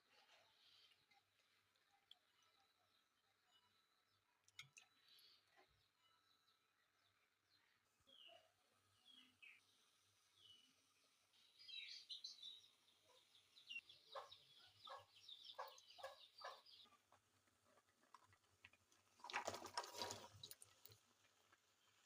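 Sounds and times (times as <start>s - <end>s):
birds chirping and clucking: 13.0s - 18.3s.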